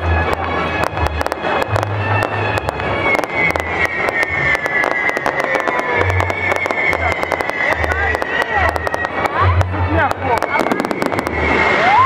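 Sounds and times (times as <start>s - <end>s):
fireworks bangs and crackles: 0.0s - 12.0s
high tone sliding down: 0.0s - 12.0s
music playing: 0.0s - 12.0s.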